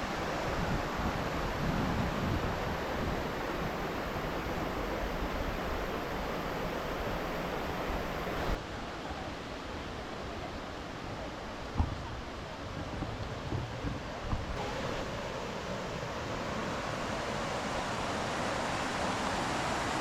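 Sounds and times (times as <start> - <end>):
waterfall rushing: 0.0 - 8.6, 14.5 - 20.0.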